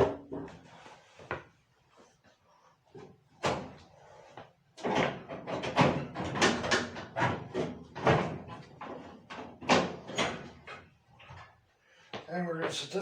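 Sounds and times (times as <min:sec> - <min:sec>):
knocks and clatter of dryer parts: 0:00.0 - 0:00.7, 0:02.9 - 0:03.8, 0:04.8 - 0:11.6.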